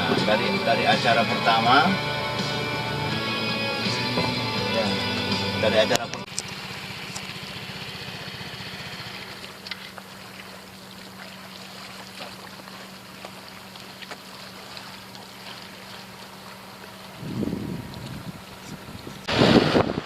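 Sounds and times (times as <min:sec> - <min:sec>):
road noise: 0:00.0 - 0:20.0
vehicle engine hum: 0:00.0 - 0:20.0
low rumble: 0:17.0 - 0:20.0.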